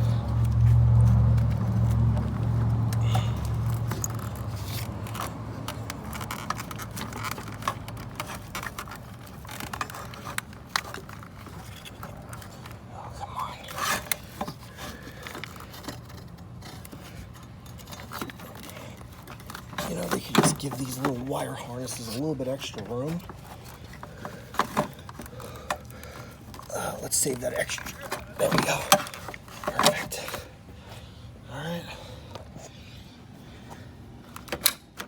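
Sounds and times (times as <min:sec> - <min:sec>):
plastic fittings clicking and rattling: 0:03.7 - 0:12.8.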